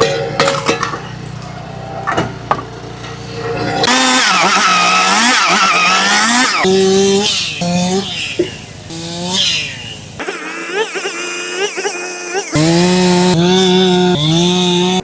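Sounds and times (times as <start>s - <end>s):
firewood processor engine hum: 0.0s - 15.0s
saw cutting through log: 3.2s - 15.0s.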